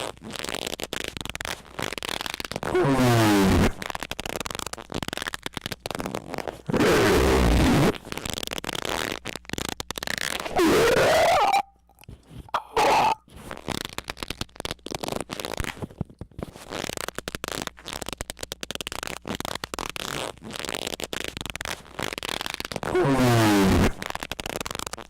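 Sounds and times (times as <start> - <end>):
rapid crackling and clicking: 0.0 - 2.9, 3.6 - 12.1, 12.9 - 23.1, 23.7 - 25.0
loud squeak: 10.4 - 11.7, 12.6 - 13.2.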